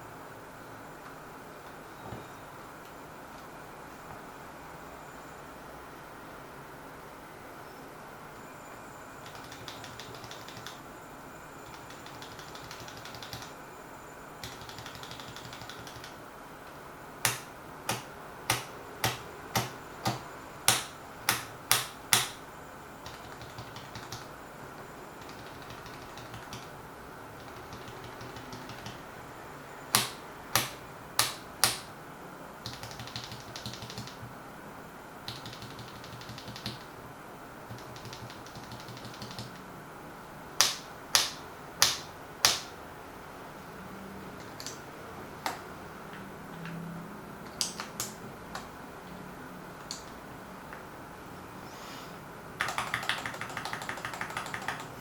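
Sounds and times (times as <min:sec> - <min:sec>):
mechanical keyboard typing: 0:09.2 - 0:10.8, 0:11.6 - 0:13.6, 0:14.4 - 0:16.2, 0:17.2 - 0:22.4, 0:23.0 - 0:24.3, 0:25.2 - 0:26.7, 0:27.4 - 0:29.0, 0:29.9 - 0:31.9, 0:32.6 - 0:34.3, 0:35.3 - 0:36.9, 0:37.7 - 0:39.6, 0:40.6 - 0:42.7, 0:44.4 - 0:44.8, 0:47.5 - 0:48.7, 0:52.6 - 0:55.0.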